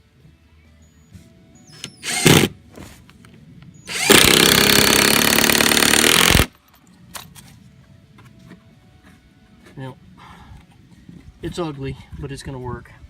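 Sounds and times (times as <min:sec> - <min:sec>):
power drill driving a screw: 0:01.7 - 0:02.5, 0:03.9 - 0:06.5.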